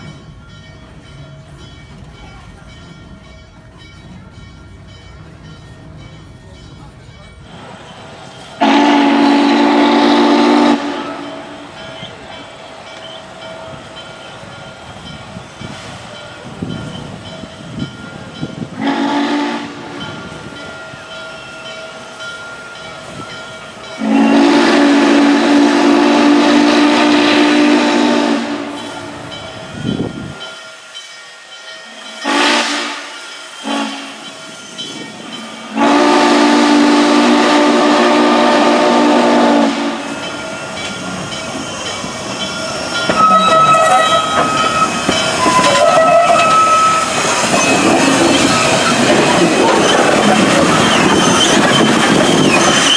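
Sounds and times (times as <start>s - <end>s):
train hissing and rumbling: 0.0s - 52.9s
steam locomotive whistle blasts: 8.6s - 12.2s, 18.7s - 22.8s, 23.9s - 29.4s, 31.9s - 34.9s, 35.5s - 41.2s, 41.9s - 52.9s.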